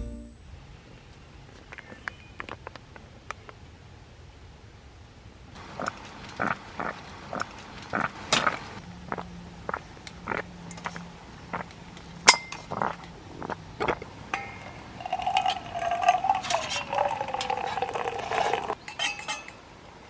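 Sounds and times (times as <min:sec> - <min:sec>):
ringing tone: 0:00.0 - 0:00.4
camp dishes clinking: 0:14.1 - 0:19.7.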